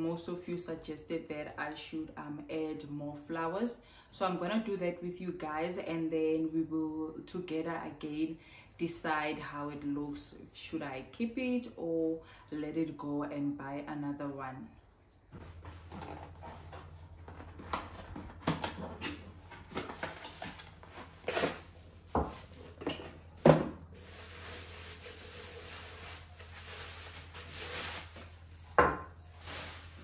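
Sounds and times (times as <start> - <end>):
artificial flowers rustling: 20.4 - 30.0.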